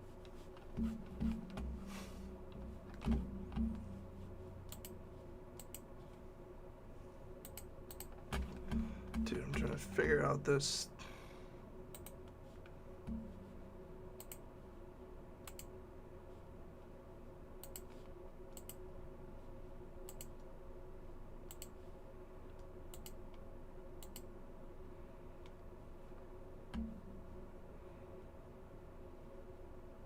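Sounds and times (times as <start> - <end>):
steady electrical hum: 0.0 - 30.0
computer mouse clicking: 4.7 - 5.0, 5.6 - 5.9, 7.4 - 9.2, 11.9 - 12.4, 14.2 - 14.4, 15.4 - 15.7, 17.6 - 18.8, 20.0 - 20.5, 21.5 - 21.8, 22.5 - 23.4, 24.0 - 24.3.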